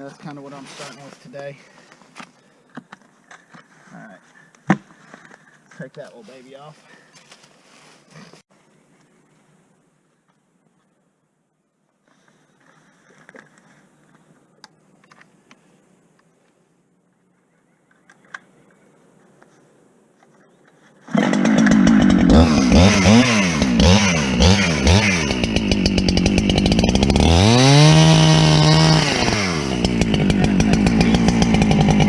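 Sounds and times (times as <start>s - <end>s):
chainsaw revving: 21.0s - 32.0s.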